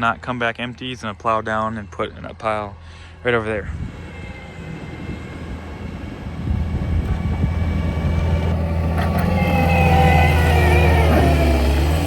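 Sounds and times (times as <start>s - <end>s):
diesel engine working under load: 0.0s - 12.0s.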